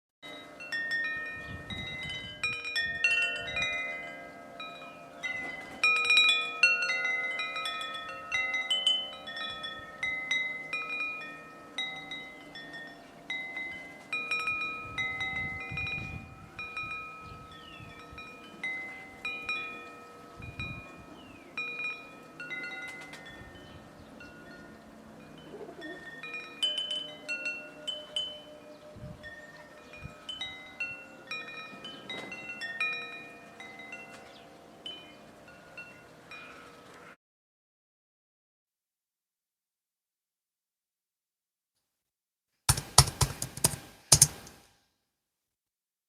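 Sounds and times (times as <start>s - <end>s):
wind chimes ringing: 0.2s - 36.9s.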